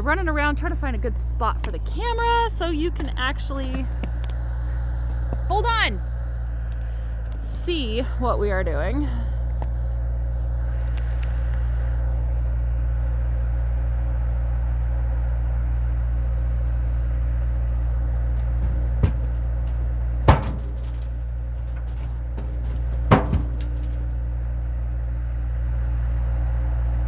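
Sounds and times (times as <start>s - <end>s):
vehicle engine running: 0.0s - 27.0s
sharp knocks or clanks: 18.4s - 24.1s.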